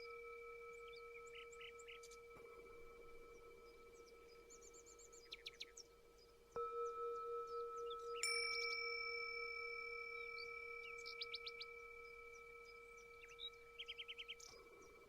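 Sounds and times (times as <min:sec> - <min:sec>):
low bell ringing: 0:00.0 - 0:05.3, 0:06.0 - 0:15.0
small birds chirping: 0:00.0 - 0:15.0
higher bell struck: 0:06.6 - 0:15.0.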